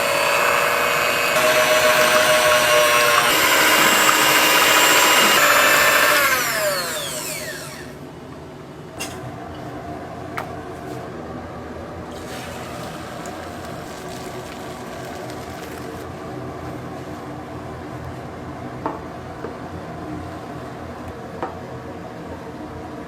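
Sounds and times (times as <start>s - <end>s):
liquid bubbling: 12.1s - 16.1s.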